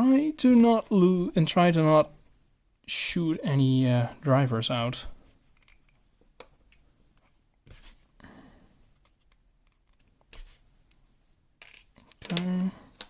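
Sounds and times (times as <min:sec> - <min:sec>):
lock parts clicking and scraping: 0:05.5 - 0:06.8, 0:09.0 - 0:11.0.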